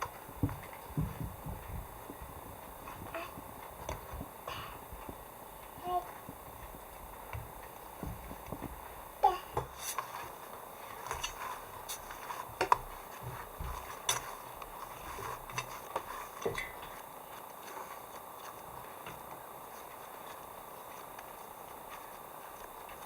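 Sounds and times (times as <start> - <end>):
faint steady background noise: 0.0 - 23.0.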